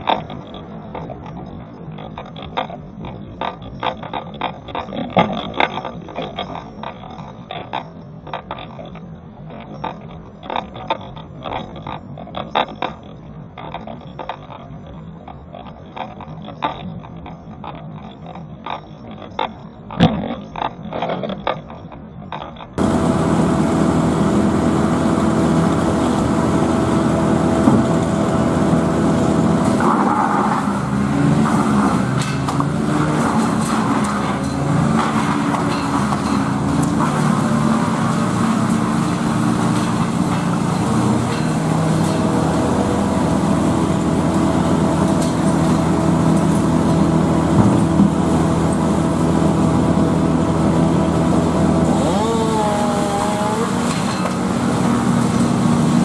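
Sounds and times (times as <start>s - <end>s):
machine engine running loudly: 22.8s - 56.0s.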